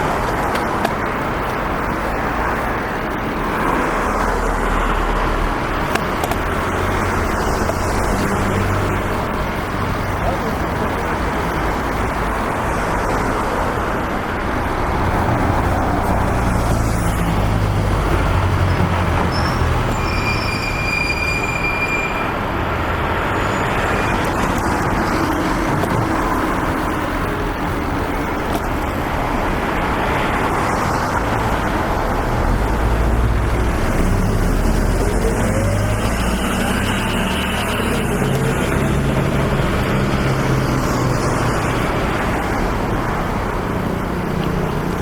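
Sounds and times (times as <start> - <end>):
passing vehicles: 0.0 - 45.0
short high-pitched squeal: 19.3 - 22.4.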